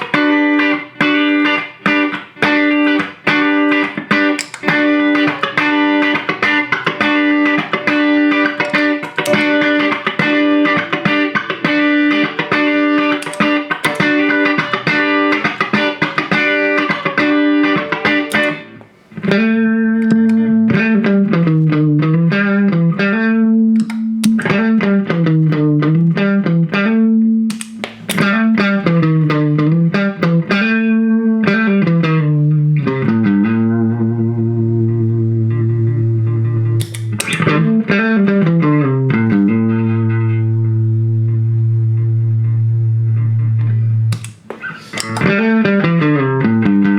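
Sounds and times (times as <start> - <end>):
electric guitar playing: 0.0 - 46.9.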